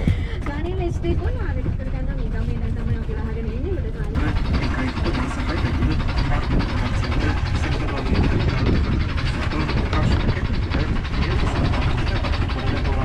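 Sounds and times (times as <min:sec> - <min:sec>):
boat engine running: 0:00.0 - 0:13.0.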